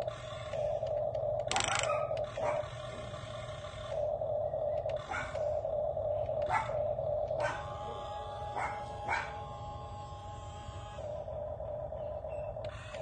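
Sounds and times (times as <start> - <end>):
steady droning hum: 0.0 - 13.0
dog barking: 1.8 - 2.7, 5.1 - 5.4, 6.5 - 6.8, 7.4 - 7.8, 8.6 - 9.4.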